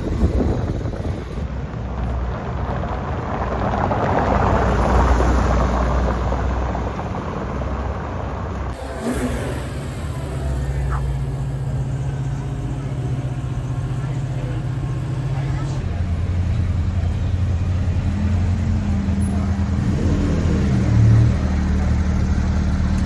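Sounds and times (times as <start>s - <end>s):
low engine hum: 0.0s - 23.0s
sports car passing by: 8.6s - 23.0s.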